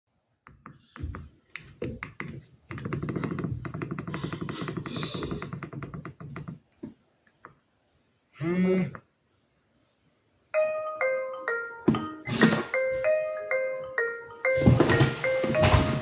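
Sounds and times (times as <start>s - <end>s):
clicky rhythmic ringtone: 10.6s - 16.0s.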